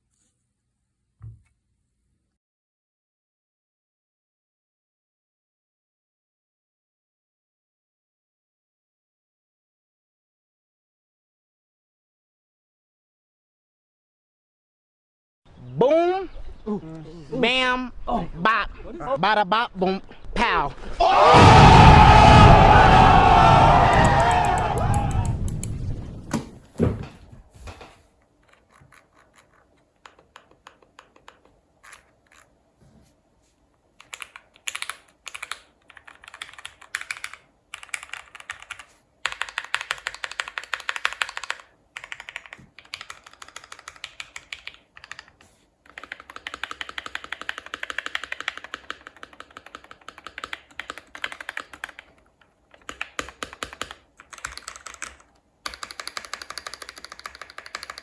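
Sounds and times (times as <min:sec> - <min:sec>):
mechanical keyboard typing: 0:23.9 - 0:25.8, 0:28.4 - 0:32.5, 0:34.0 - 0:58.0.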